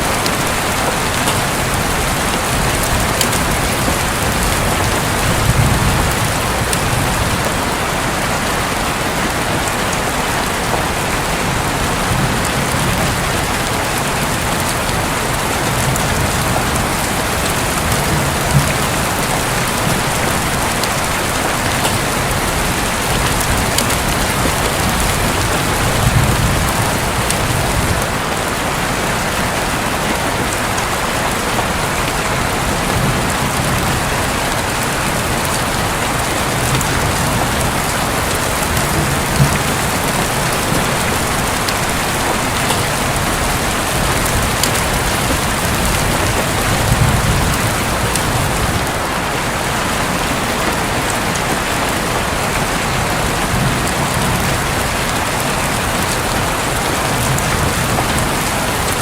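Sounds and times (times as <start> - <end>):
heavy rain drumming on a roof: 0.0 - 59.0
low rumbles of thunder: 1.4 - 7.6.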